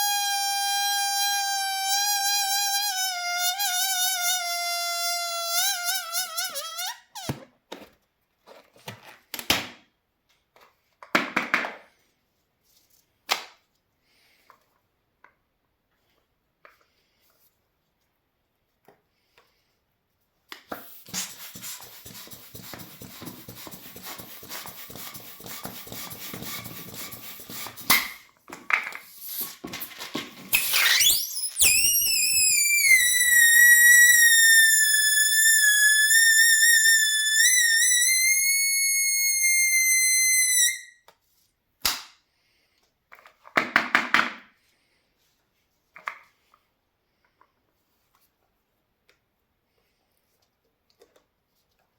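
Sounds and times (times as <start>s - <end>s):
high-pitched balloon squeal: 0.0s - 7.4s, 29.2s - 29.6s, 30.5s - 41.0s
balloon squeaks and rubs: 0.0s - 7.5s, 20.9s - 28.2s, 29.1s - 29.8s, 30.4s - 41.0s
air rushing from balloon: 21.0s - 25.5s.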